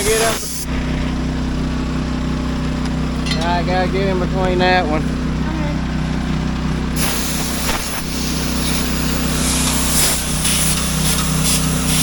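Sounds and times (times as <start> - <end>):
high hiss: 0.0 - 0.7, 7.0 - 12.0
heavy machine engine running: 0.0 - 12.0.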